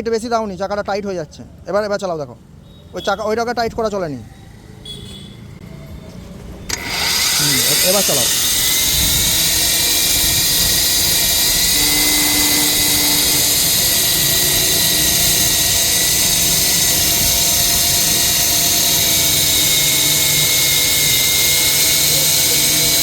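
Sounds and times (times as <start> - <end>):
ring saw whining: 6.7 - 23.0.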